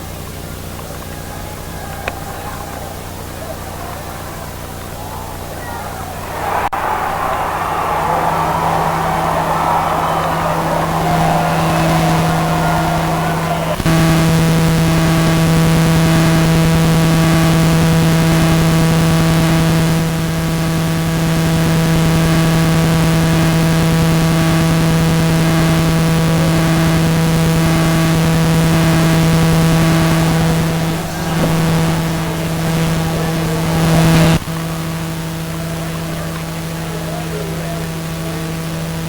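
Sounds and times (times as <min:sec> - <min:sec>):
electrical mains hum: 0:00.0 - 0:39.0.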